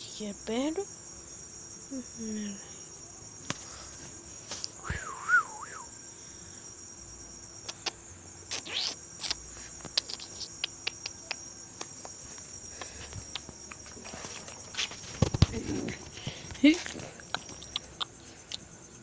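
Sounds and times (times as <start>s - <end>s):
crickets chirping: 0.0s - 19.0s
sharp clicks: 7.6s - 12.2s, 17.2s - 18.6s.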